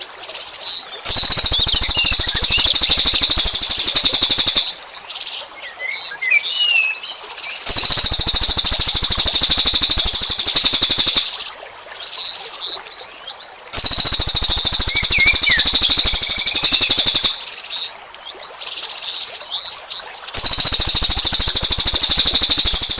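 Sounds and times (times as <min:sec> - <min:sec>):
songbirds rattling trills: 0:00.0 - 0:22.9
bird chirps and whistles: 0:01.1 - 0:04.8, 0:05.8 - 0:11.3, 0:13.8 - 0:17.4, 0:20.4 - 0:22.9.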